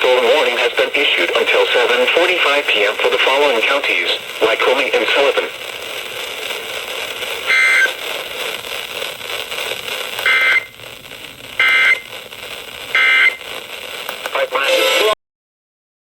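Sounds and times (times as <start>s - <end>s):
radio hiss: 0.0s - 15.2s
buzzy digital data tones: 5.5s - 13.6s.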